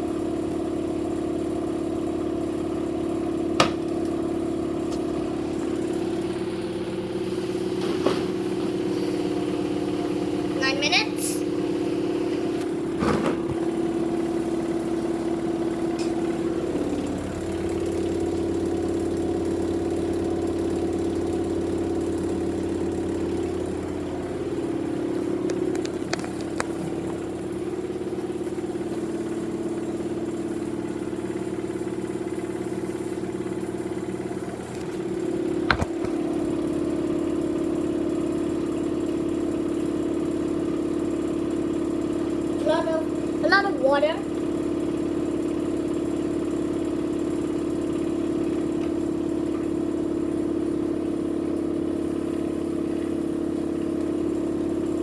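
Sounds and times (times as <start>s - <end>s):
washing machine spinning: 0.0s - 55.0s.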